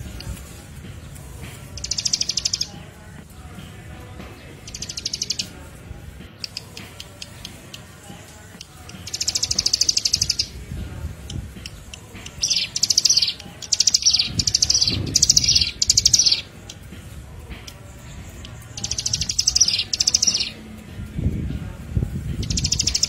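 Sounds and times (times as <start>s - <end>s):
bird singing high trills: 1.7s - 2.8s, 4.5s - 5.6s, 6.4s - 10.7s, 11.3s - 16.8s, 17.7s - 20.8s, 22.4s - 23.0s.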